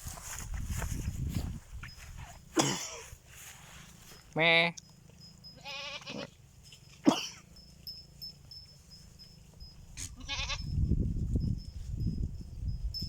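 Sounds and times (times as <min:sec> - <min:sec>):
goats bleating: 0:05.6 - 0:06.4, 0:10.0 - 0:10.6.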